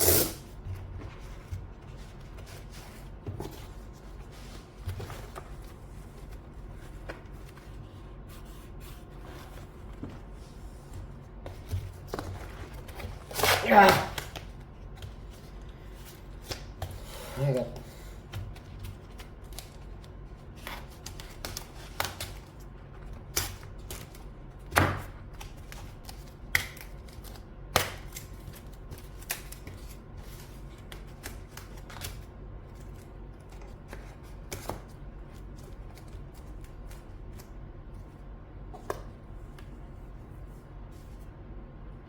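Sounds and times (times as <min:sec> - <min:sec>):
steady low hum: 0:00.0 - 0:42.0.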